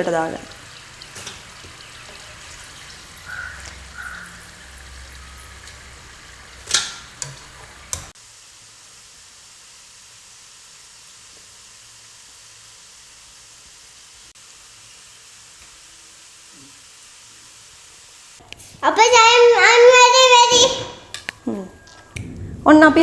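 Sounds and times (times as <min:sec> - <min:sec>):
steady hiss: 0:00.0 - 0:23.0
kitchen utensils clinking: 0:00.4 - 0:08.1.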